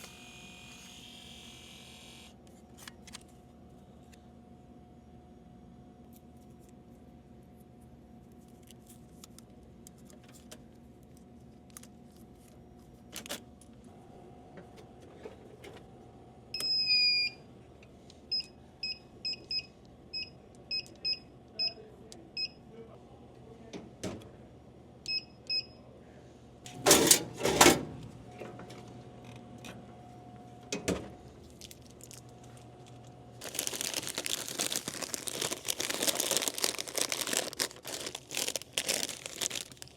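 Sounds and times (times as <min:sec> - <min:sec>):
vending machine keypad beeps: 0:16.6 - 0:17.4, 0:18.3 - 0:21.8, 0:25.1 - 0:25.8
plastic crinkling: 0:31.4 - 0:39.9.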